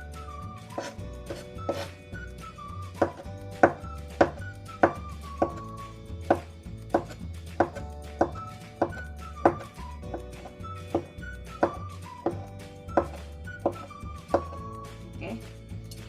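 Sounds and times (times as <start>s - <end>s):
background music: 0.0s - 16.0s
knife slicing on cutting board: 0.6s - 2.0s.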